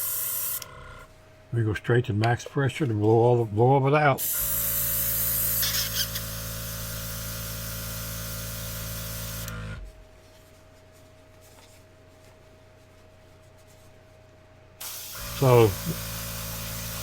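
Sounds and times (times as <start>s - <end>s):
airbrush hissing: 0.0s - 0.6s, 4.2s - 9.5s, 14.8s - 17.0s
compressor humming: 0.0s - 11.3s, 14.0s - 17.0s.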